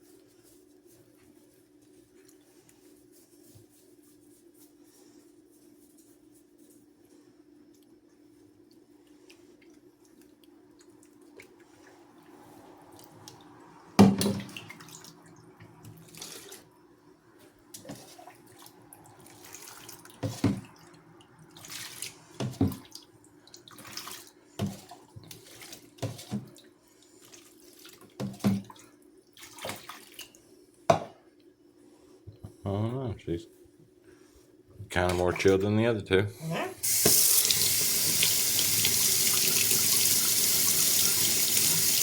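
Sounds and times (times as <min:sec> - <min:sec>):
water splashing in a sink: 0:10.2 - 0:16.7, 0:17.7 - 0:30.4, 0:36.8 - 0:42.0.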